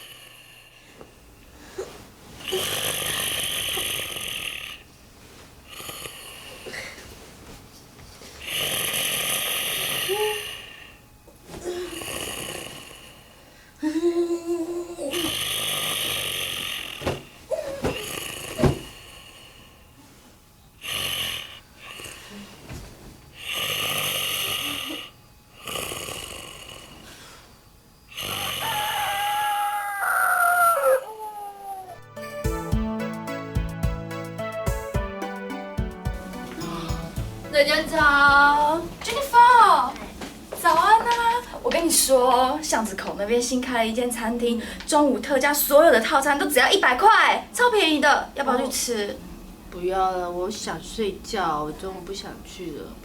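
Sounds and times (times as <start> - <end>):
loud rasping snores: 0.0 - 0.7, 2.4 - 4.9, 5.7 - 6.8, 8.4 - 11.0, 11.8 - 13.3, 15.1 - 17.0, 17.9 - 19.8, 20.8 - 22.3, 23.4 - 27.1, 28.1 - 29.1.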